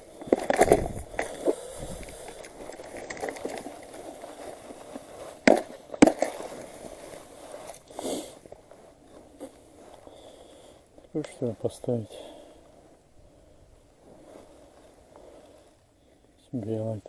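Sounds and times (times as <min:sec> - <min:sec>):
fishing tackle rustling and clicking: 0:00.0 - 0:13.0.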